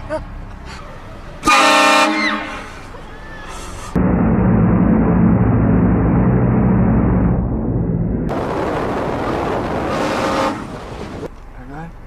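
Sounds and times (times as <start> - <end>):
train horn blasting: 1.4 - 2.8, 9.9 - 10.7.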